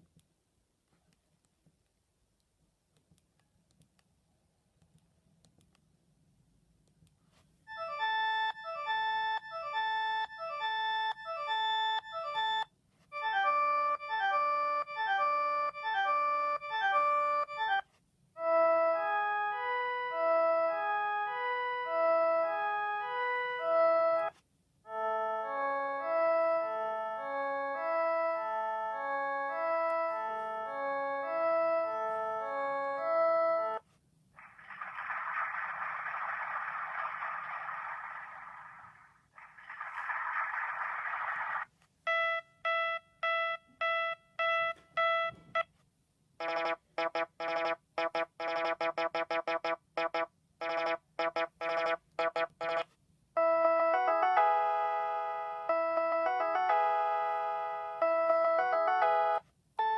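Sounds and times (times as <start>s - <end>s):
phone ringtone melodies: 7.7s - 17.8s, 18.4s - 33.8s, 46.4s - 52.8s, 53.4s - 59.9s.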